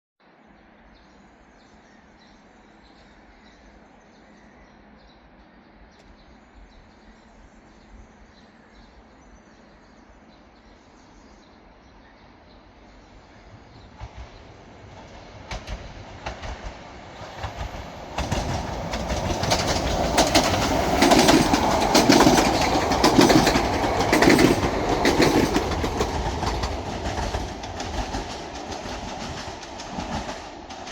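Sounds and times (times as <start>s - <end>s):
train wheels clacking over rail joints: 14.0s - 30.9s.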